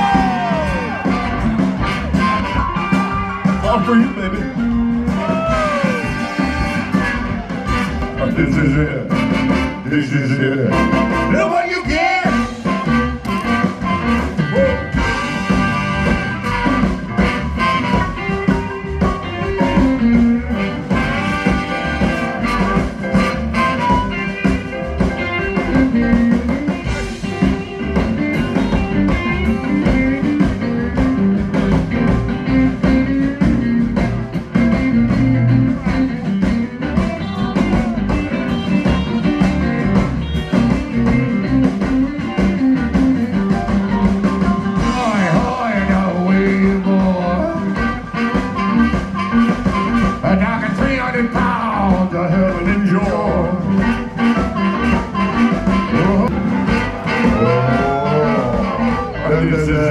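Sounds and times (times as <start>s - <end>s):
bass: 0.0s - 59.9s
blues guitar: 0.0s - 59.9s
steady drum beat: 0.0s - 59.9s.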